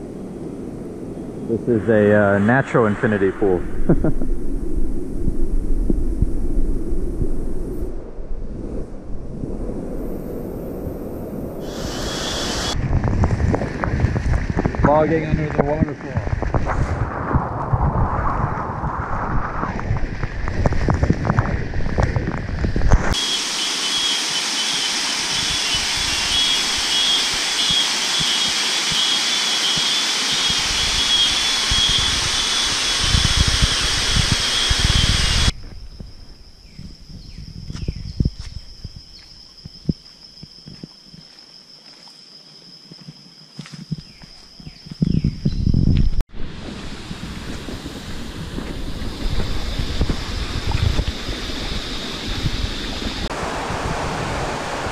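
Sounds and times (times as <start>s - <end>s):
wind buffeting microphone: 0.0s - 23.2s, 30.5s - 40.9s, 43.8s - 54.9s
steady high-pitched tone: 23.1s - 35.6s
waterfall roaring: 53.3s - 54.9s.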